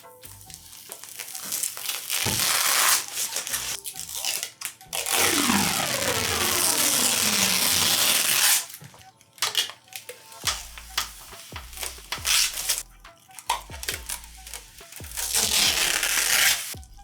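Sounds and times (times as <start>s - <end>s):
plastic crinkling and tearing: 0.4s - 16.8s.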